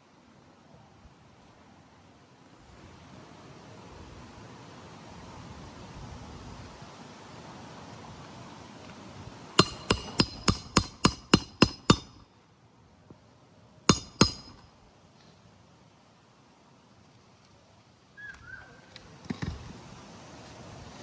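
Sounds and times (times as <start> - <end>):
hammer striking nails: 9.6 - 12.3, 13.9 - 14.7.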